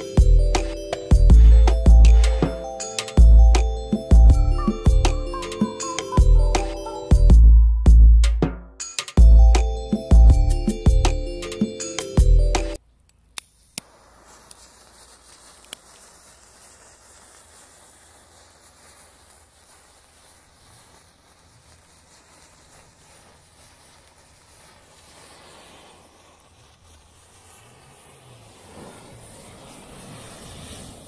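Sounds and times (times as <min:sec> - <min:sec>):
burning matches hissing: 0:00.0 - 0:07.1, 0:13.2 - 0:31.0
sharp snaps: 0:13.0 - 0:14.8.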